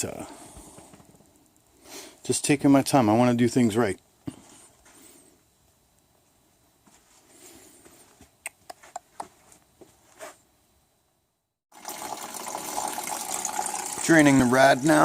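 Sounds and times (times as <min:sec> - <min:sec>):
coolant pouring out: 0:11.7 - 0:15.0.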